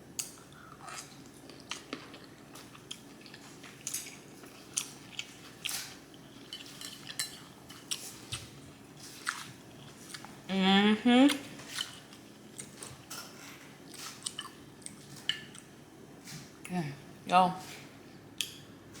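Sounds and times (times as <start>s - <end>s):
chewing and mouth smacking: 0.2s - 10.3s, 13.9s - 15.7s.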